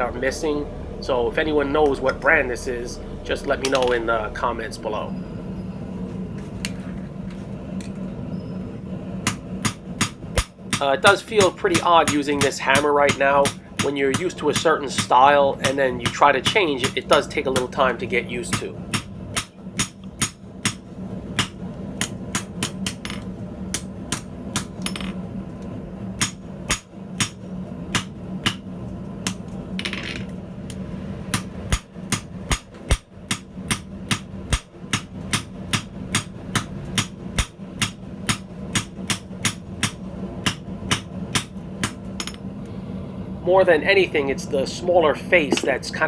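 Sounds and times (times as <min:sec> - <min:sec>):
steady low hum: 0:00.0 - 0:46.0
hammer striking steel on anvil: 0:09.2 - 0:17.8, 0:18.5 - 0:25.2, 0:26.2 - 0:28.6, 0:31.3 - 0:42.5.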